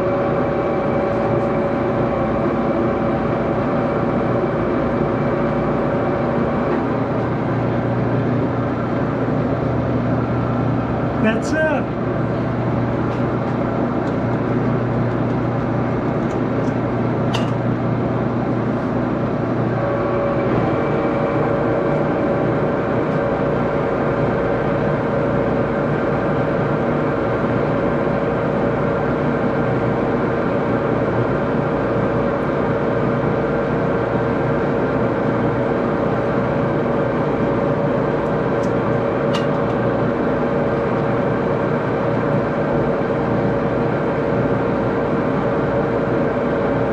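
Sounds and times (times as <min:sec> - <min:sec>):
lathe gear-train whine: 0:00.0 - 0:46.9
high-pitched whine: 0:19.3 - 0:24.4.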